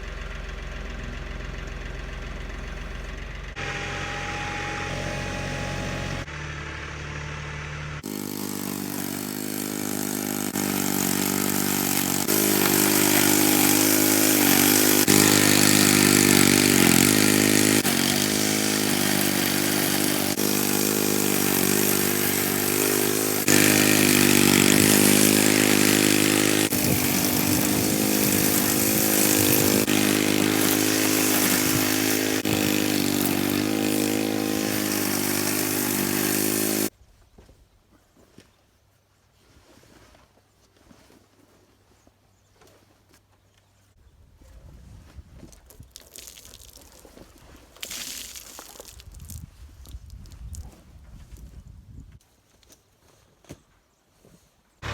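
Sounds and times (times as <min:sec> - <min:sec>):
machine engine running: 0:00.1 - 0:36.9.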